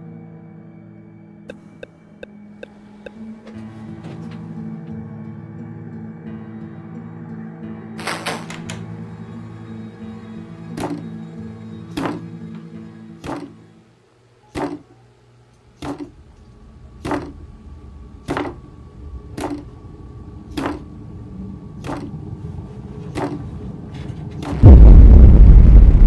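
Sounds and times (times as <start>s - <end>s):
loud low rumbling: 16.1s - 22.8s, 24.5s - 26.0s
low drone: 16.1s - 26.0s.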